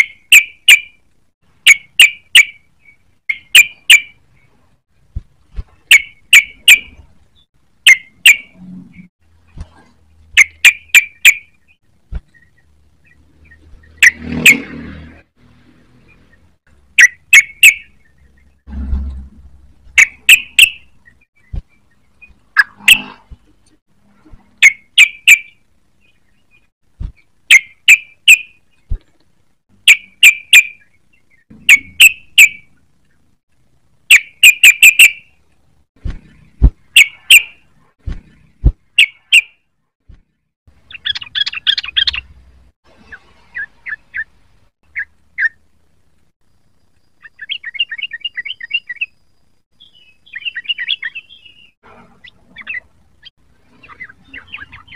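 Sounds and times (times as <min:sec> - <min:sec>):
bulbul chattering calls: 0:40.9 - 0:42.3, 0:49.8 - 0:54.9.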